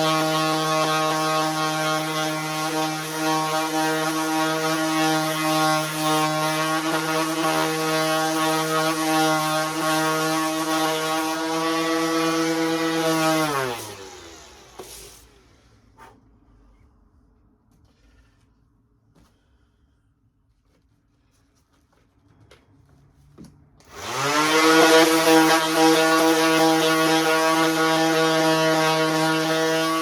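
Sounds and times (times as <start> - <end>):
orbital sander sanding wood: 0.0 - 15.6, 23.9 - 30.0.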